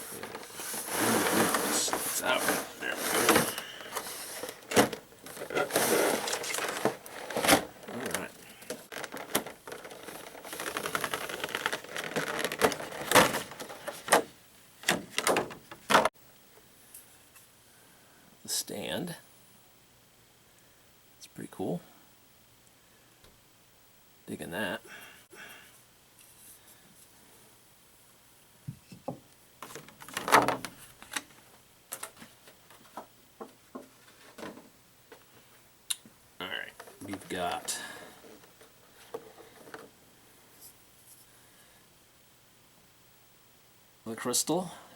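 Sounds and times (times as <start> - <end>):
packaging rustling and scraping: 0.0 - 14.3.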